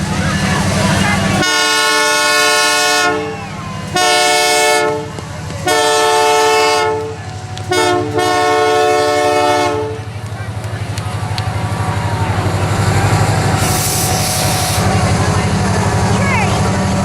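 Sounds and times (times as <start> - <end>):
rumble of rolling train: 0.0 - 17.0
locomotive air horn blasts: 0.9 - 10.1.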